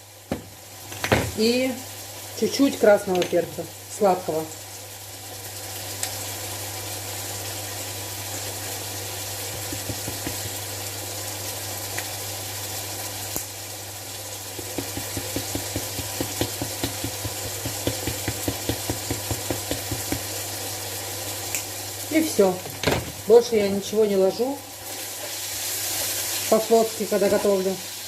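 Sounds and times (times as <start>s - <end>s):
meat sizzling in a frying pan: 0.0s - 28.0s
spatula scraping and tapping pan: 14.6s - 20.3s.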